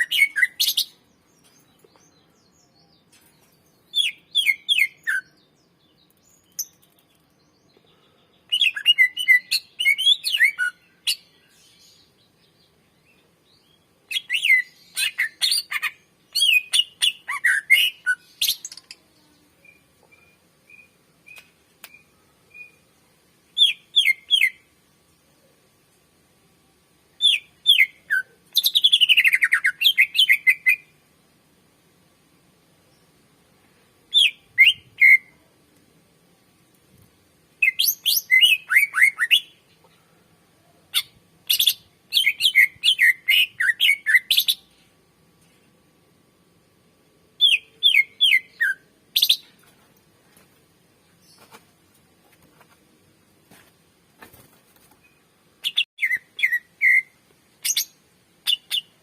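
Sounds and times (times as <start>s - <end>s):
bird singing whistled phrases: 37.6s - 39.6s, 47.4s - 49.4s, 55.7s - 57.9s.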